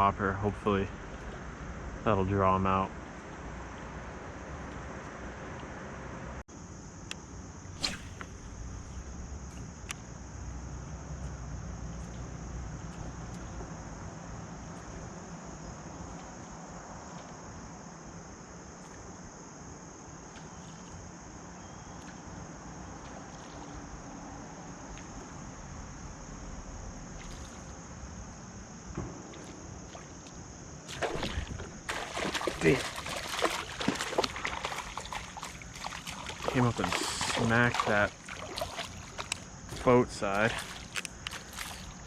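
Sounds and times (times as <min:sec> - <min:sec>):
insect chorus: 0:00.0 - 0:42.0.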